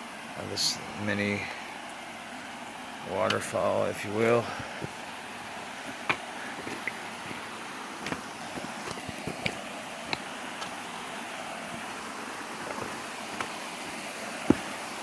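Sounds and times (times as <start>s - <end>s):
small waterfall rushing: 0.0s - 15.0s
sharp clicks and knocks: 5.8s - 7.4s, 8.0s - 10.8s, 14.4s - 14.8s.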